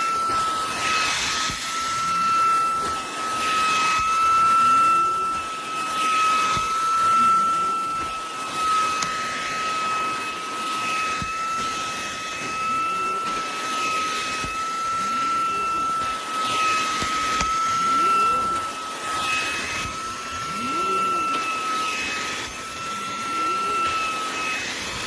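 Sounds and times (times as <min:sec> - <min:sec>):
handheld vacuum running: 0:00.0 - 0:25.0.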